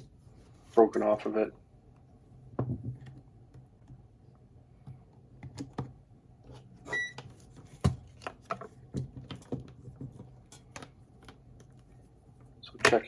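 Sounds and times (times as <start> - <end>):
multimeter beep: 6.9 - 7.2.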